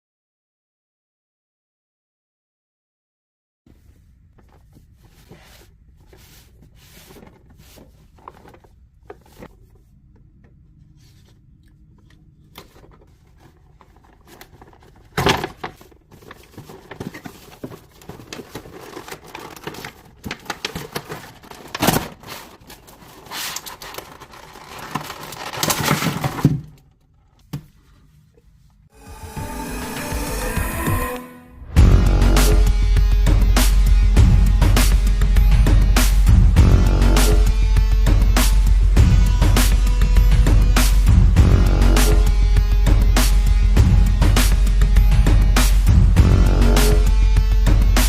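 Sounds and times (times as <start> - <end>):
packaging crinkling and tearing: 12.0 - 26.8.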